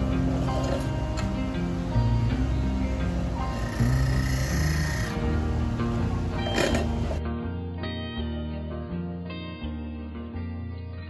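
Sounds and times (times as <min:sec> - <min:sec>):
plucked string notes: 0:00.0 - 0:10.4.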